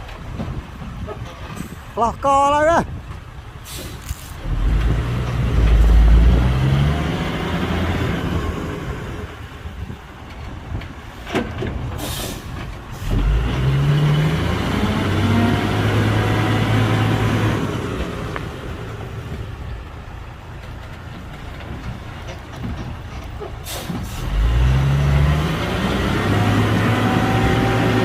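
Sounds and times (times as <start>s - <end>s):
diesel engine revving: 3.6s - 10.0s, 11.8s - 28.0s.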